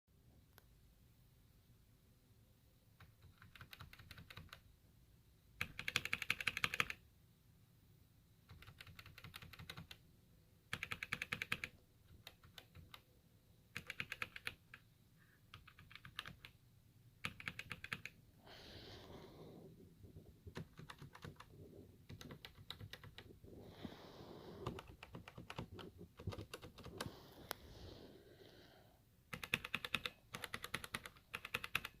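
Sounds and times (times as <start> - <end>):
mechanical keyboard typing: 3.0 - 4.6, 5.6 - 7.0, 8.4 - 10.0, 10.7 - 13.1, 13.7 - 14.8, 15.5 - 16.6, 17.2 - 18.2, 20.4 - 23.3, 24.6 - 27.1, 29.3 - 32.0.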